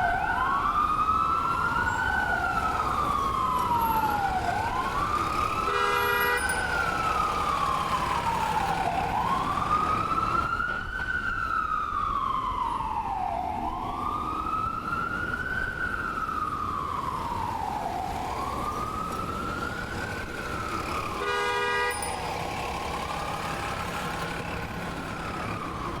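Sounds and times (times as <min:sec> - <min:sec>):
ambulance siren wailing: 0:00.0 - 0:26.0
horn blasts: 0:05.7 - 0:06.6, 0:21.2 - 0:22.3.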